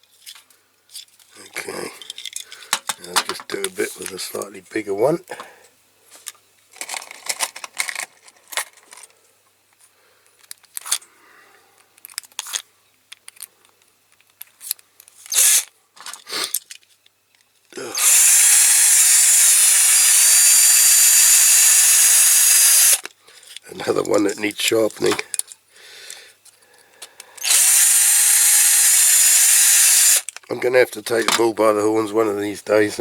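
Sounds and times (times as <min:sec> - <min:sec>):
small handling clicks and knocks: 0:00.0 - 0:04.5, 0:06.2 - 0:11.1, 0:11.8 - 0:17.8, 0:22.9 - 0:27.6, 0:30.2 - 0:31.7
power drill drilling: 0:15.3 - 0:15.6, 0:17.8 - 0:23.0, 0:27.4 - 0:30.3.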